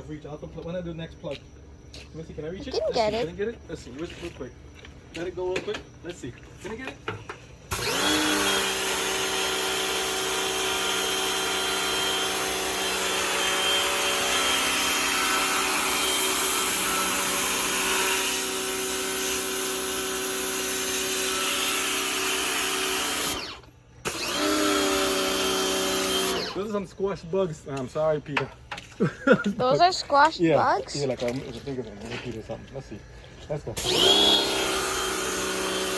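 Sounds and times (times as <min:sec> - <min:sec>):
pressure washer motor whine: 0:07.7 - 0:26.8, 0:33.8 - 0:35.9.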